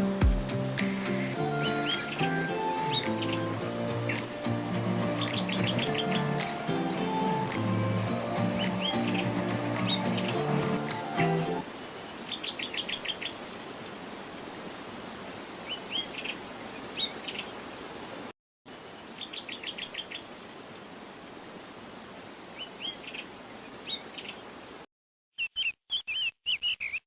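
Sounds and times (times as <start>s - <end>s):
small birds chirping: 0.0s - 11.6s, 25.3s - 27.0s
steady hiss: 0.0s - 11.9s.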